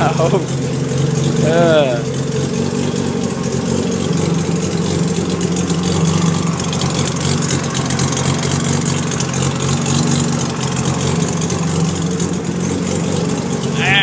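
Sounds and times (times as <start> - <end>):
rotary engine idling: 0.0 - 14.0.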